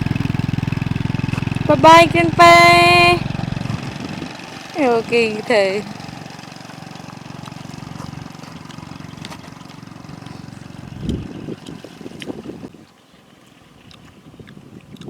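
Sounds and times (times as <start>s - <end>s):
small engine running: 0.0s - 12.7s.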